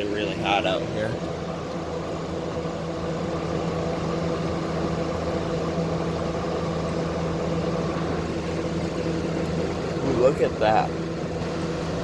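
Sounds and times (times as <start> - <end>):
air conditioner humming: 0.0 - 12.0.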